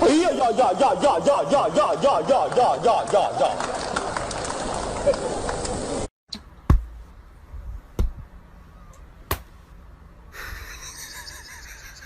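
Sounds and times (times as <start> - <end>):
dull heavy thumps: 6.6 - 7.1.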